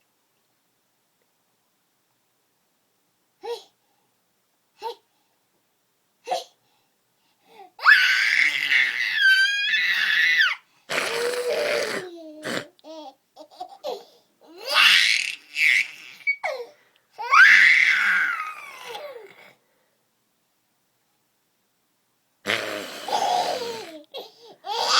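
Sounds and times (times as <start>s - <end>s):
person squealing: 7.9s - 12.6s, 14.7s - 16.4s.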